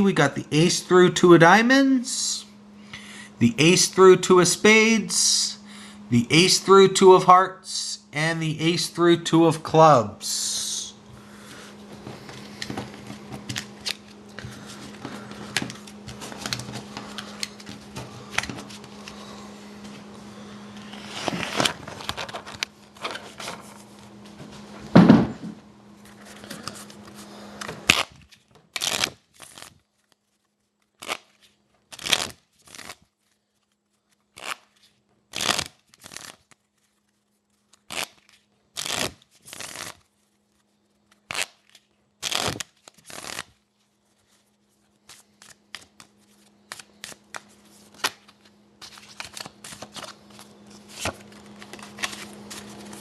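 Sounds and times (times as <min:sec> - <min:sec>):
playing cards being shuffled: 0:11.9 - 0:20.1, 0:20.7 - 0:24.3, 0:26.1 - 0:53.0.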